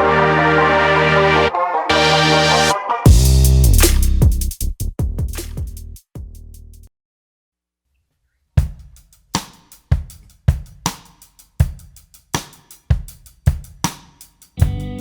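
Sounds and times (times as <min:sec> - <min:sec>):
drum kit beat: 0:02.4 - 0:06.9, 0:08.6 - 0:15.0.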